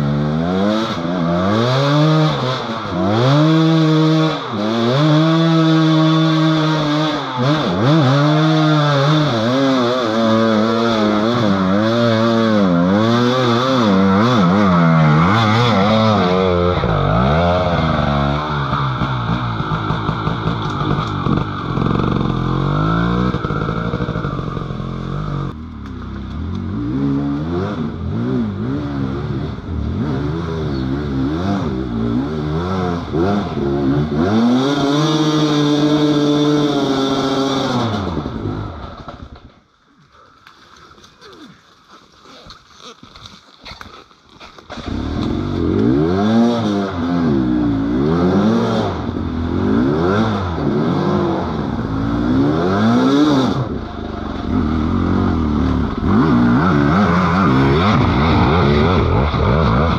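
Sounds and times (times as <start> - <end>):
motorcycle engine revving: 0.0 - 39.5, 44.6 - 59.9.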